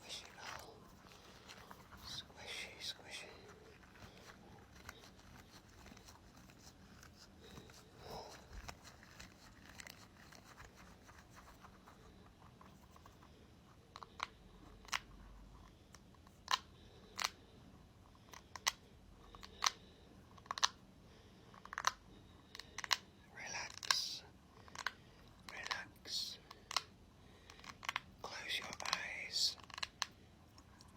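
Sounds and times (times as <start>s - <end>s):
ball scratching: 0.0s - 13.2s.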